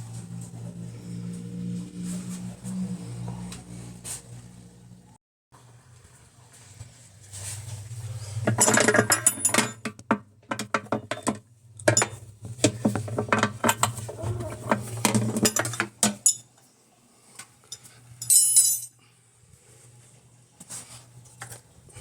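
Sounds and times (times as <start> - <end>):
hard parts clinking together: 8.5 - 12.2, 13.0 - 16.4, 18.2 - 19.0.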